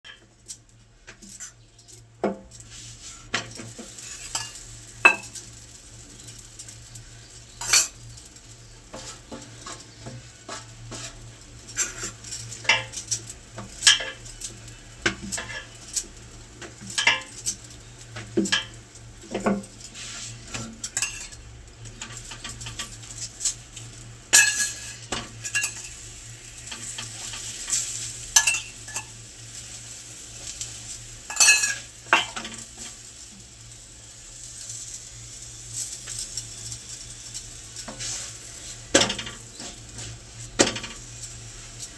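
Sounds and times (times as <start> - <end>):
food sizzling in a pan: 0.1 - 41.9
metal utensils clinking on pots: 3.3 - 5.5, 7.6 - 8.2, 9.0 - 16.1, 16.7 - 17.7, 20.8 - 21.4, 24.3 - 26.0, 26.7 - 29.2, 31.3 - 33.0.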